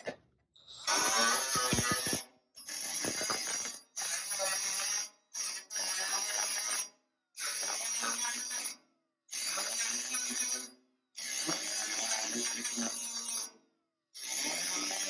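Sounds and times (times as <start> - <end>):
angle grinder grinding steel: 0.6 - 8.7, 9.4 - 13.5, 14.2 - 15.0.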